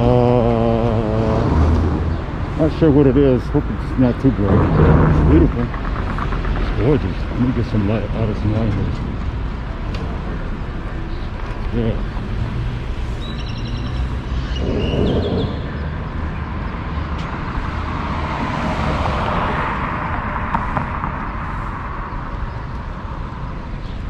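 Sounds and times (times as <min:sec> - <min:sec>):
traffic rumble: 0:00.0 - 0:24.0
vehicle passing close by: 0:04.3 - 0:07.1, 0:12.2 - 0:21.7.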